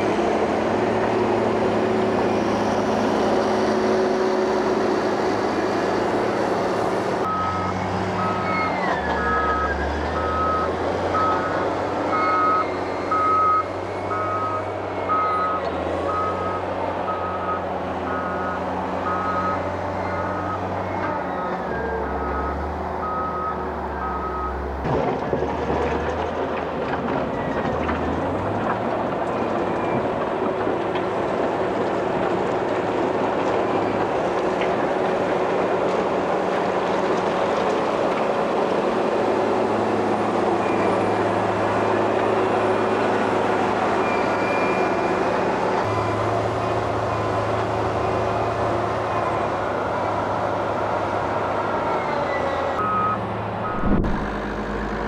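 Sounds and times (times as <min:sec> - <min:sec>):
diesel construction machine running: 0:00.0 - 0:55.0
reversing alarm beeping: 0:07.3 - 0:20.7, 0:21.4 - 0:24.6, 0:52.8 - 0:54.6
machine clunk: 0:53.8 - 0:54.5.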